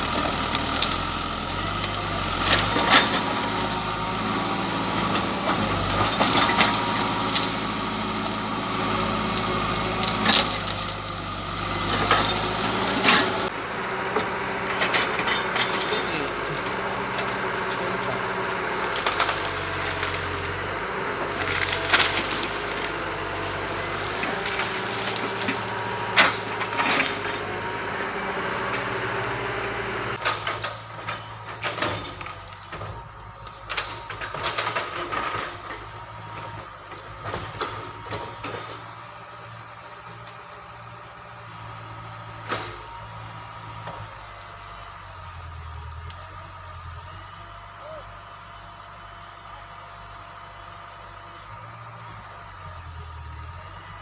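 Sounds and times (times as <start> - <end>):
wood cracking and snapping: 0.0 - 13.5, 17.2 - 27.6
excavator engine running: 0.0 - 54.0.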